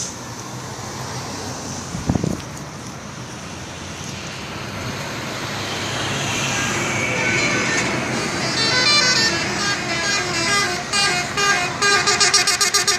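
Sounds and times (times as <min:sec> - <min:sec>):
road traffic: 0:00.0 - 0:12.9
wind buffeting microphone: 0:01.8 - 0:02.8.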